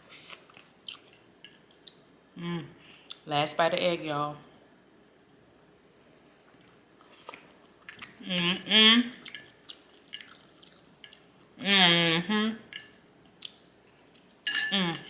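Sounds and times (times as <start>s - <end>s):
utensils tapping against a bowl: 1.1s - 1.7s, 8.4s - 10.4s, 12.7s - 13.0s, 14.5s - 15.0s.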